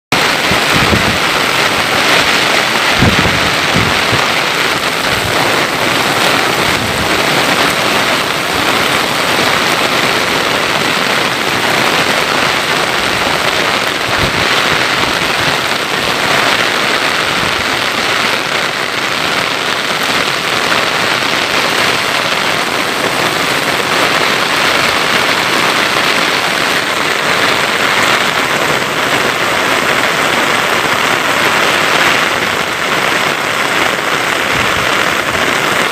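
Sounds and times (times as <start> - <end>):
heavy rain hissing: 0.1 - 35.9.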